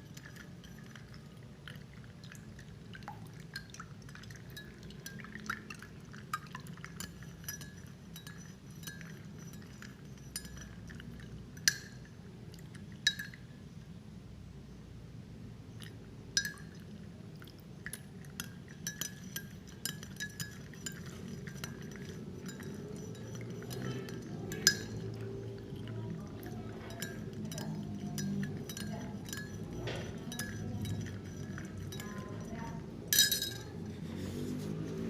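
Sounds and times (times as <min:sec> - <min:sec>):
spoon clinking in glass: 0:00.0 - 0:01.3, 0:03.5 - 0:12.2, 0:13.0 - 0:13.5, 0:15.8 - 0:16.8, 0:18.2 - 0:33.8.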